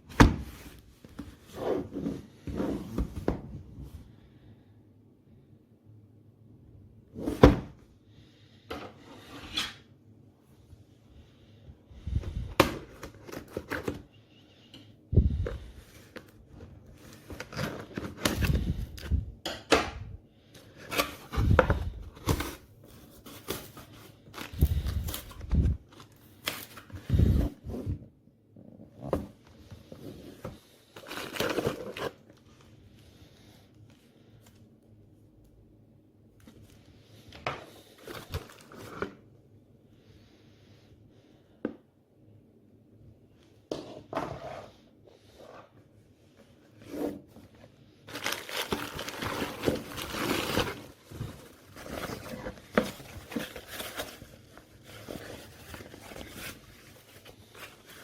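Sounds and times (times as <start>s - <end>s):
crinkling and rustling: 45.3s - 58.0s.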